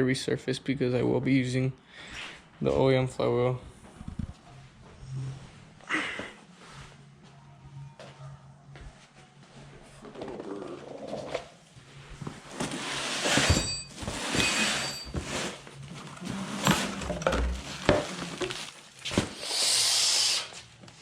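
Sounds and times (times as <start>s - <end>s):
metal tools clinking: 13.3s - 18.2s
rushing hiss: 19.4s - 20.6s.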